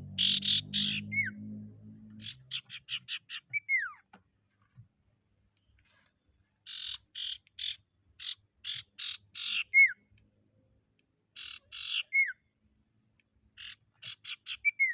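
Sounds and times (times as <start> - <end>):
bird harsh rasping notes: 0.0 - 4.0.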